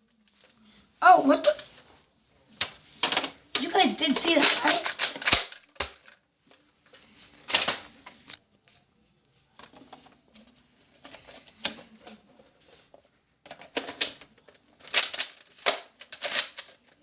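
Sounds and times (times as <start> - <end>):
hard plastic toy clicks: 4.2 - 6.2.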